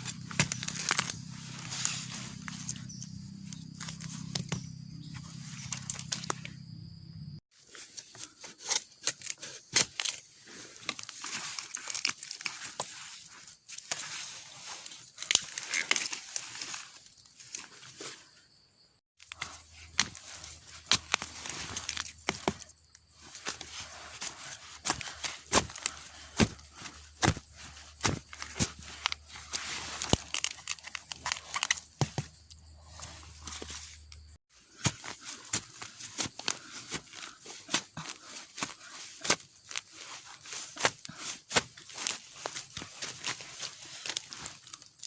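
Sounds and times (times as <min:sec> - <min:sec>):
footsteps through dry leaves: 0:00.0 - 0:06.1, 0:19.5 - 0:22.6, 0:34.7 - 0:45.0
dry plant material crunching: 0:00.0 - 0:06.6, 0:07.8 - 0:18.2, 0:19.2 - 0:45.0
twigs snapping: 0:00.0 - 0:06.6, 0:08.6 - 0:12.9, 0:13.8 - 0:17.7, 0:19.2 - 0:45.0.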